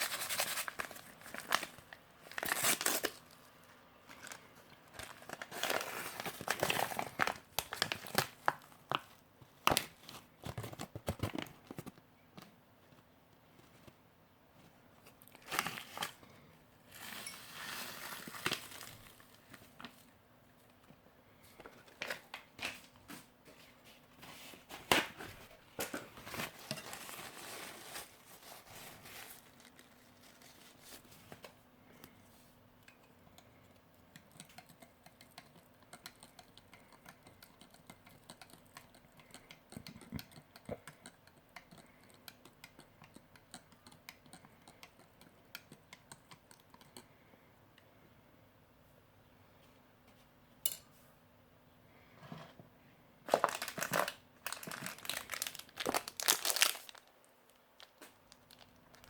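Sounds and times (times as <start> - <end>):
packaging crinkling and tearing: 0.0 - 11.9, 15.3 - 16.2, 17.6 - 20.0, 53.3 - 59.0.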